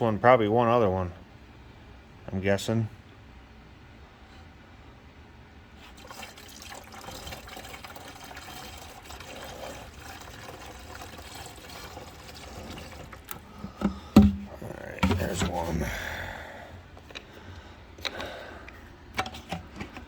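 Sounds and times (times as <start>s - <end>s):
liquid pouring from plastic jug: 5.8s - 16.0s
knocks and thump: 13.6s - 15.6s.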